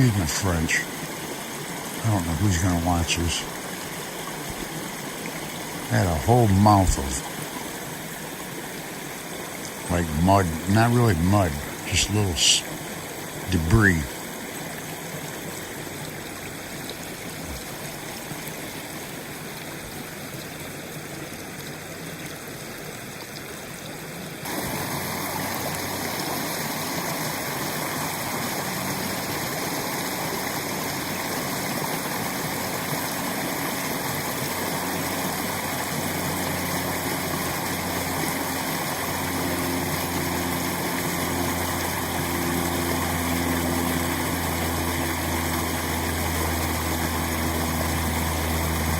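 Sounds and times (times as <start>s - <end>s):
low engine drone: 0.0s - 7.9s, 9.3s - 14.3s, 24.5s - 48.9s
water running through dam: 0.0s - 48.9s.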